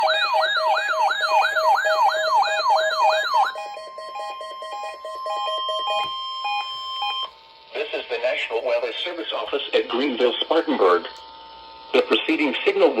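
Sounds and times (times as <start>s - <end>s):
fast electronic siren: 0.0s - 7.3s
steady warning tone: 0.0s - 13.0s.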